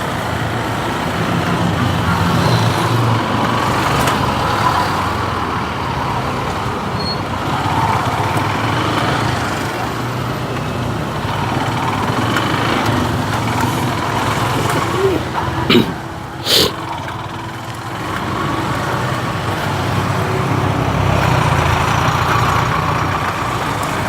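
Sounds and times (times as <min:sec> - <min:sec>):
road traffic: 0:00.0 - 0:24.0
motorcycle engine running: 0:00.5 - 0:24.0.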